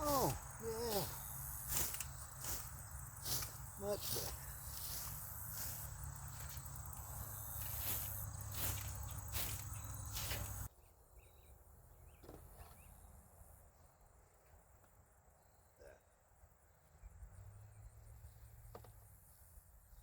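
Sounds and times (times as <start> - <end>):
insects chirping: 0.0 - 10.7
rustling steps: 0.0 - 10.7
bird chirps: 0.0 - 13.1.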